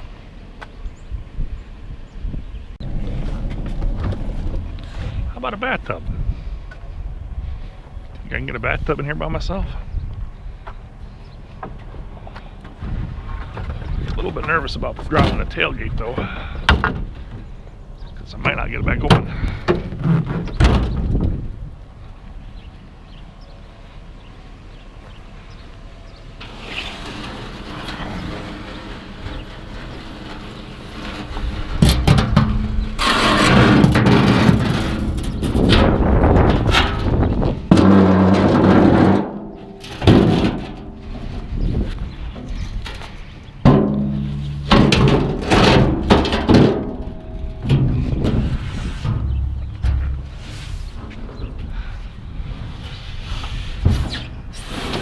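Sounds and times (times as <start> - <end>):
bathtub scraping: 26.4 - 35.8
heavy knocks on metal tub: 33.5 - 41.0, 43.6 - 50.4.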